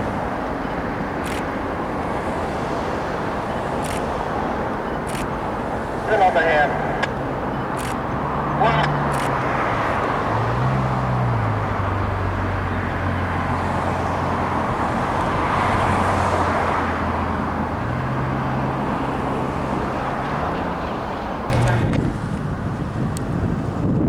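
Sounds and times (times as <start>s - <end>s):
traffic hiss: 0.0s - 10.0s
diesel locomotive engine drone: 0.0s - 24.0s.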